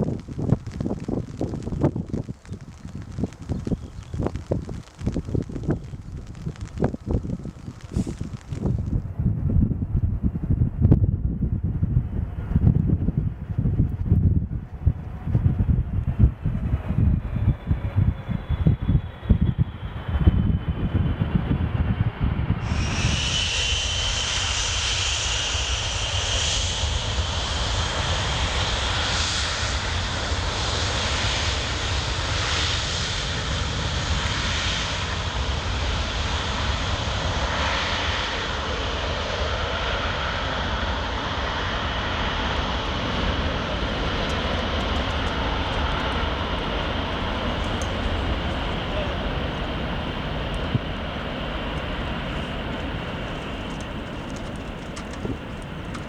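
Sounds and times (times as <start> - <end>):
jet engines running: 0.0 - 9.2, 22.3 - 56.0
high engine whine: 0.0 - 9.4, 39.9 - 56.0.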